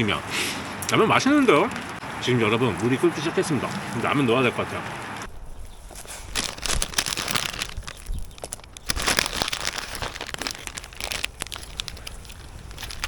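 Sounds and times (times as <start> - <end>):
plastic wrapper crinkling: 6.2 - 13.0.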